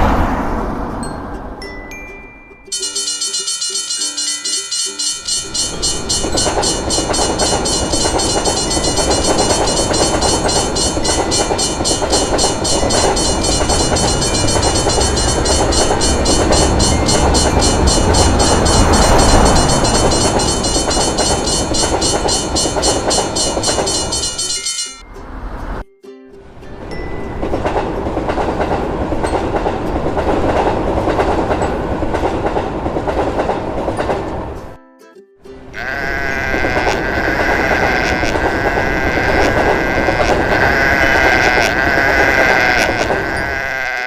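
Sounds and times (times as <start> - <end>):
train rumble and clatter: 0.0 - 1.7, 2.8 - 25.8, 26.4 - 34.8, 35.7 - 43.9
level-crossing bell ringing: 1.1 - 25.4.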